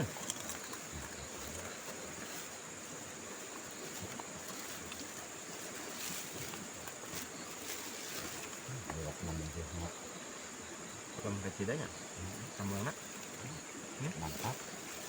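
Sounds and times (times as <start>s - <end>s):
insects droning: 0.0s - 15.0s.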